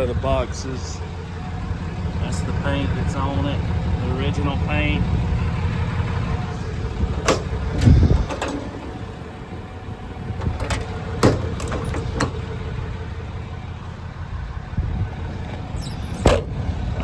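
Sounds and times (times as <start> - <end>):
steady low rumble: 0.0 - 15.8
metallic clicks and knocks: 7.2 - 9.2, 10.4 - 12.4.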